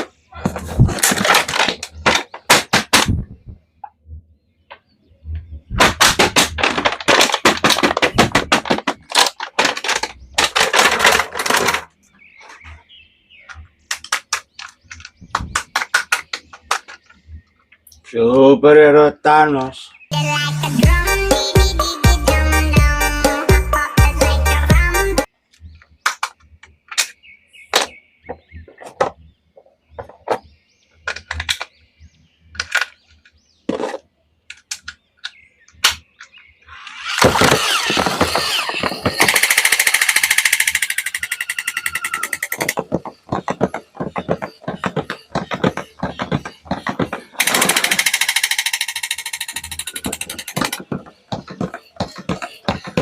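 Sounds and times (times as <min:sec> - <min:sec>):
handling clicks and taps: 0:13.4 - 0:17.8, 0:37.9 - 0:53.0
rapid rasping buzz: 0:36.7 - 0:53.0.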